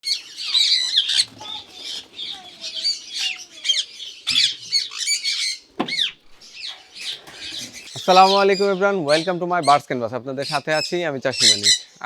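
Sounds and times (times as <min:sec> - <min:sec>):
parakeets squawking: 0:00.0 - 0:12.0.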